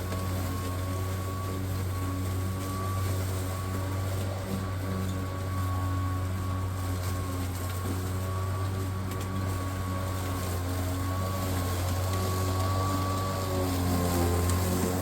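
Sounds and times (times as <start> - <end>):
electric lawnmower cutting grass: 0.0 - 15.0.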